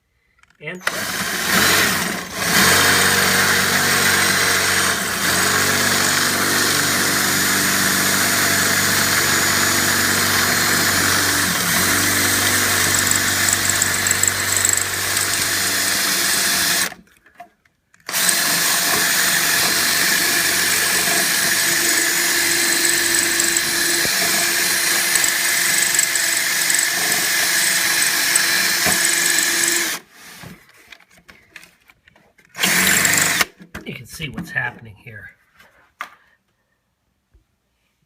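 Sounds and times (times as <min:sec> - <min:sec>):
electric drill boring into screw: 0:00.8 - 0:17.0, 0:18.1 - 0:30.1, 0:32.6 - 0:33.5.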